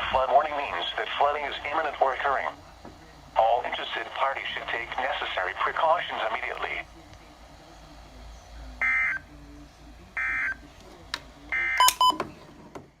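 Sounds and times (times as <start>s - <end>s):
short beeps: 11.6s - 12.2s.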